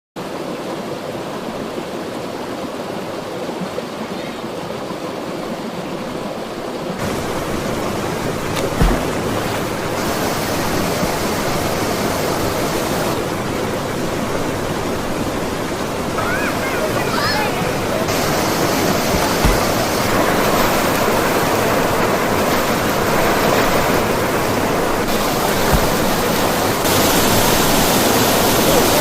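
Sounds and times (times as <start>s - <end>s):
stream water rushing: 0.2s - 29.0s
low thump: 8.6s - 9.4s, 19.1s - 20.1s, 25.5s - 26.6s.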